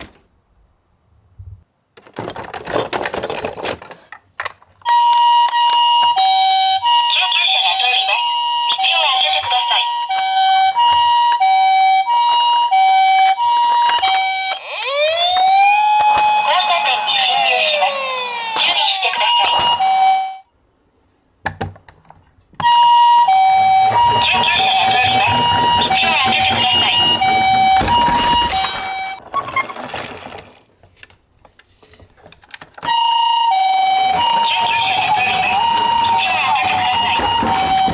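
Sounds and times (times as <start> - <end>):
toy siren two-tone: 4.9 - 20.4, 22.6 - 29.2, 32.9 - 37.9.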